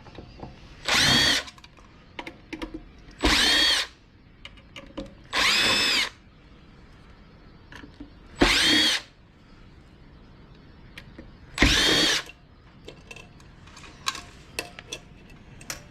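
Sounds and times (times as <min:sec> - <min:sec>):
cordless drill motor whine: 0:00.8 - 0:01.5, 0:03.2 - 0:03.9, 0:05.3 - 0:06.2, 0:08.4 - 0:09.2, 0:11.6 - 0:12.2.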